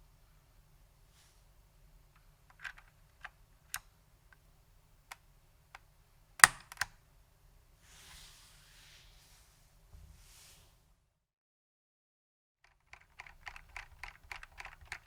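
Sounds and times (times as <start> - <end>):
keyboard keystrokes clicking: 6.4 - 7.0, 12.8 - 15.0.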